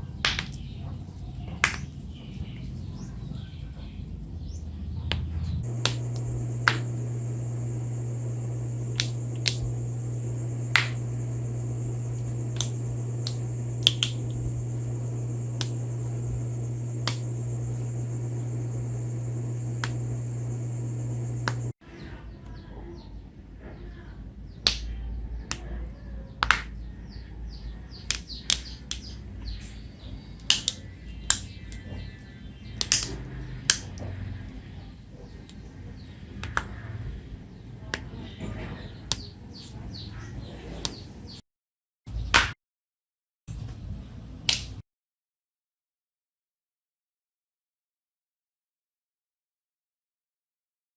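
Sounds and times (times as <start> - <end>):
steady hum: 5.5 - 21.7.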